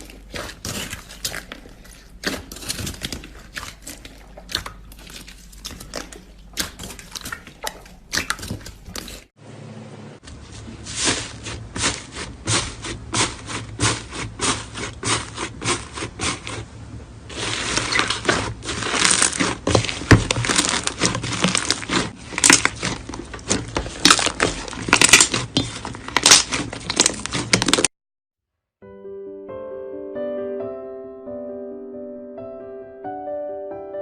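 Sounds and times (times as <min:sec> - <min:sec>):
crunchy slime crackling: 0:00.0 - 0:09.3, 0:10.8 - 0:27.9.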